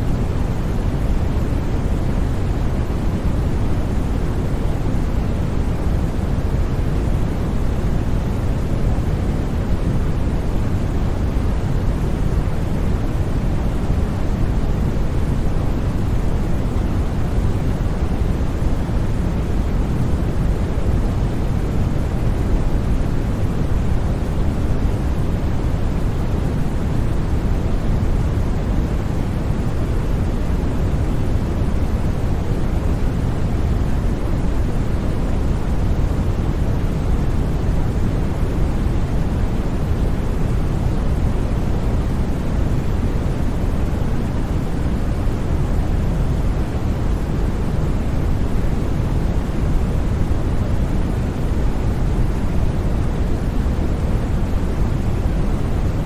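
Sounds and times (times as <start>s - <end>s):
steady white noise hiss: 0.0s - 56.0s.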